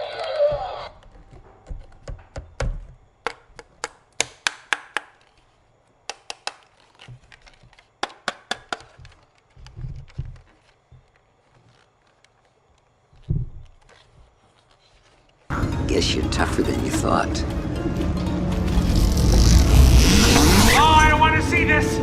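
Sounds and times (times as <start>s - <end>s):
hard objects clicking and knocking: 0.9s - 15.5s
low thud: 13.3s - 13.7s.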